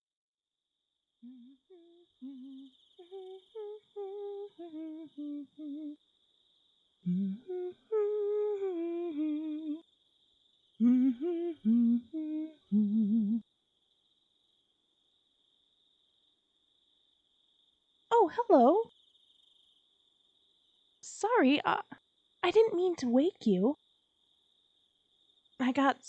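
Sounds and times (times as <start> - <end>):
crickets chirring: 0.8 - 26.0
woman humming a tune: 1.2 - 6.0, 7.1 - 9.8, 10.8 - 13.4.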